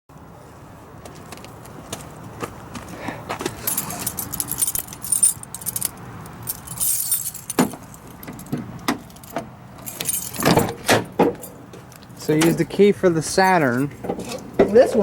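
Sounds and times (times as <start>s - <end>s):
keys jangling on a key ring: 3.6s - 10.8s.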